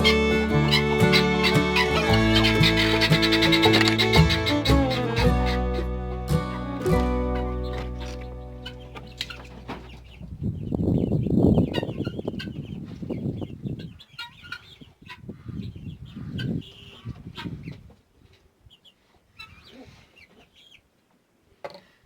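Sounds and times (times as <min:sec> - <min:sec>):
loud low rumbling: 0:00.0 - 0:11.6
chickens clucking: 0:00.0 - 0:21.0.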